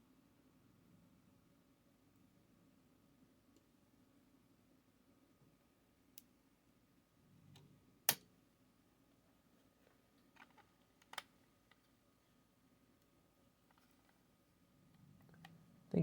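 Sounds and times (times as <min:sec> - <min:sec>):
clicks and taps of small parts: 0:10.3 - 0:11.9.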